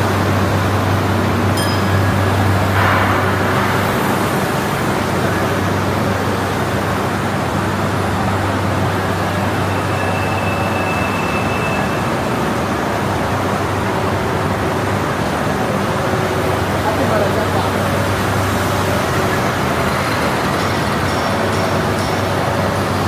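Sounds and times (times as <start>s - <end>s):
machinery running with low hum: 0.0s - 23.0s.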